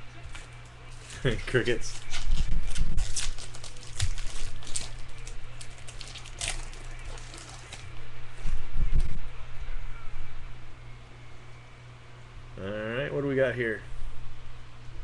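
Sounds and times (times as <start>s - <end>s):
low electrical hum: 0.0s - 15.0s
card wrapper crinkling: 0.9s - 7.9s.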